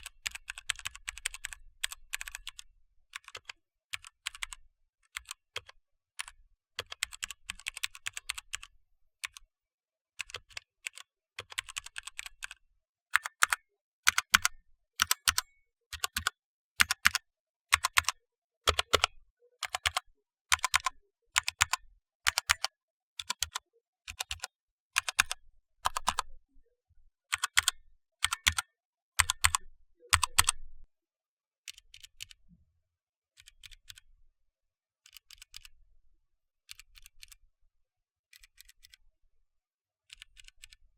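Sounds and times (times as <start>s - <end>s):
mechanical keyboard typing: 0.0s - 2.6s, 3.2s - 9.4s, 10.2s - 12.5s, 13.2s - 26.3s, 27.3s - 30.6s.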